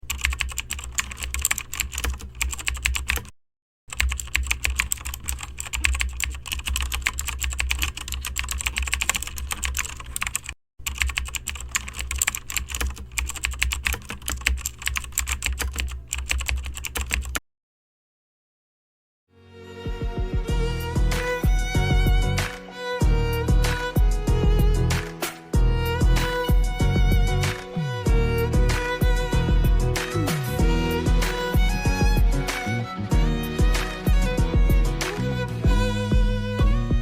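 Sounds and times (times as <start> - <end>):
rapid typing on keyboard: 0.0 - 3.3, 3.9 - 17.4.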